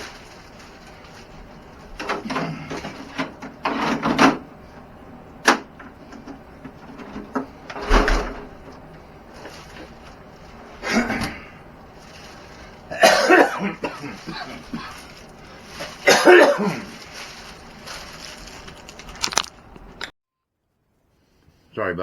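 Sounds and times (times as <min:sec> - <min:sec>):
packaging scraping and rustling: 0:00.0 - 0:04.1, 0:09.3 - 0:10.8, 0:11.9 - 0:19.7.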